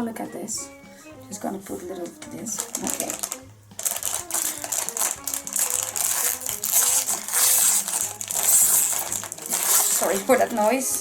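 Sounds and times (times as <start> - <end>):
quiet background music: 0.0 - 11.0
plastic bag crinkling: 2.4 - 11.0
small plastic pieces rattling: 2.5 - 10.9.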